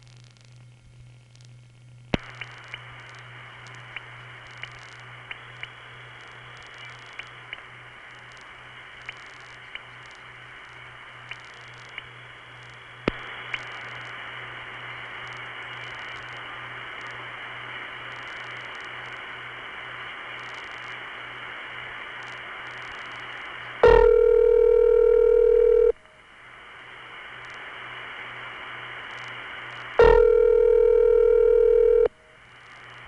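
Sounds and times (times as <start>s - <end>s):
faint dialing ticks: 0.0s - 14.2s
steady low hum: 0.0s - 33.0s
sharp line clicks: 2.1s - 5.8s, 8.3s - 10.2s, 11.2s - 12.2s, 13.0s - 14.1s
telephone line hiss: 2.2s - 33.0s.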